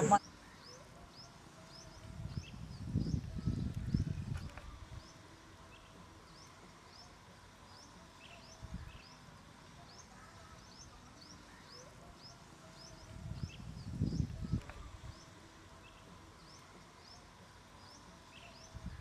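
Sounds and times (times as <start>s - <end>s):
small birds chirping: 0.0s - 19.0s.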